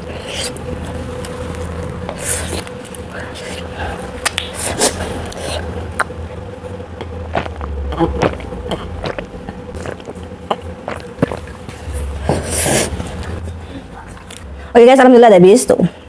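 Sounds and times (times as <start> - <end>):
steady low hum: 0.0 - 16.0
chewing with wet mouth smacks: 7.0 - 12.4.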